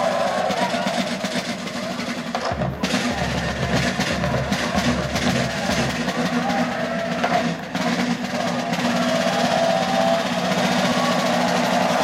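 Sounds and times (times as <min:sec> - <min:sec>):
snare drums rolling: 0:00.0 - 0:12.0.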